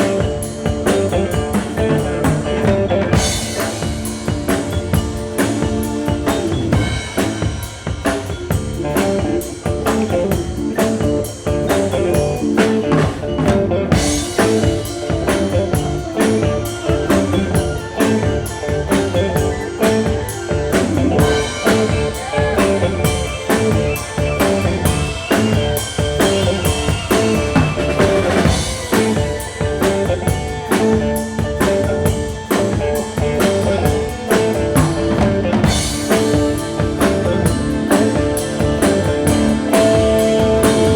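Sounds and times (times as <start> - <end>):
rock music with drum kit: 0.0 - 40.9.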